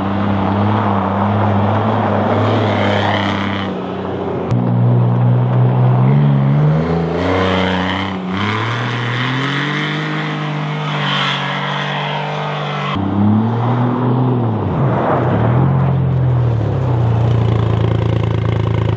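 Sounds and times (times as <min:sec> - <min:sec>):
utility vehicle engine revving: 0:00.0 - 0:04.8, 0:05.4 - 0:18.9.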